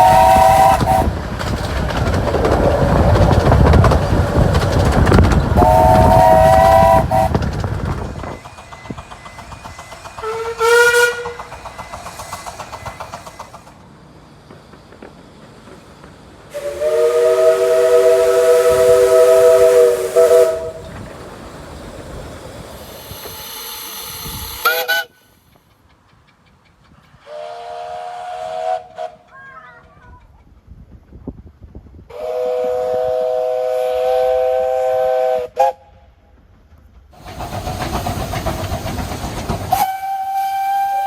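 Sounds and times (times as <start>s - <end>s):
steam locomotive whistle: 0.0s - 1.2s, 5.6s - 7.5s, 10.2s - 11.6s, 16.5s - 21.0s, 22.9s - 25.3s, 27.2s - 29.3s, 32.1s - 36.2s, 39.7s - 41.0s
steam hissing: 0.0s - 25.4s, 32.0s - 41.0s.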